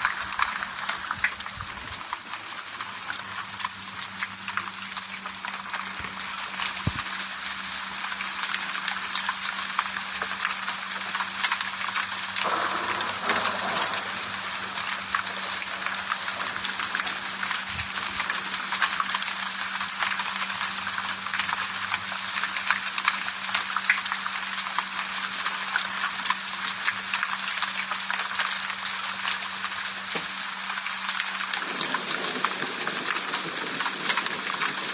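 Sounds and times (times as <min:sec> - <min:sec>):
rain drops tapping hard surface: 0:00.0 - 0:34.9.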